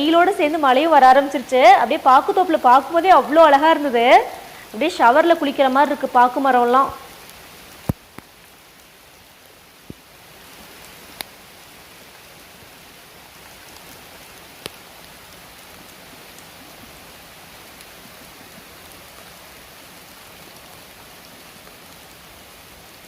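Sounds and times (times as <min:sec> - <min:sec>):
light rain on leaves: 0:00.0 - 0:23.0
sharp drip tick: 0:10.8 - 0:11.4, 0:14.6 - 0:15.1.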